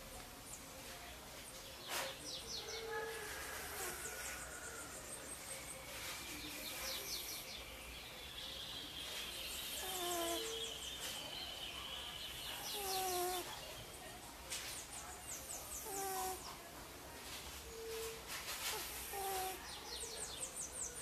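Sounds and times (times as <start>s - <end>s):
birds chirping: 0.0s - 21.0s
cat snoring: 9.8s - 10.6s, 12.7s - 13.5s, 15.8s - 16.4s, 18.7s - 19.6s.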